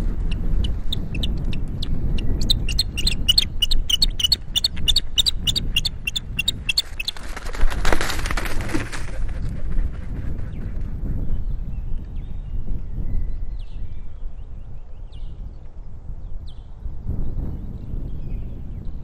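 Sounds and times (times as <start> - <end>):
osprey alarm calls: 2.2 - 7.2.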